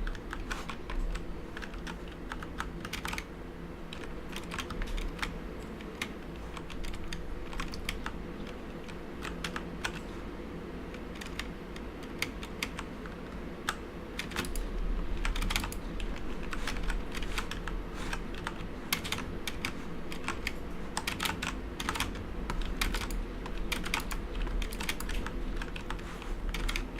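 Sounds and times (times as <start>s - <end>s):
mechanical keyboard typing: 0.0s - 3.3s, 3.9s - 10.1s, 10.9s - 26.9s.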